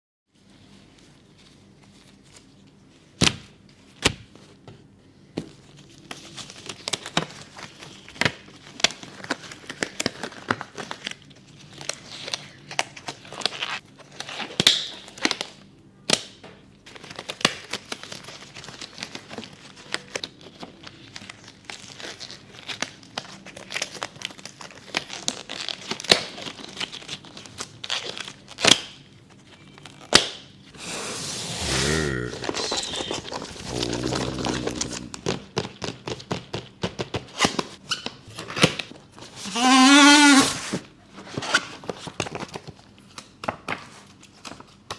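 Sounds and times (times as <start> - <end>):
packaging crinkling and tearing: 16.9 - 28.7.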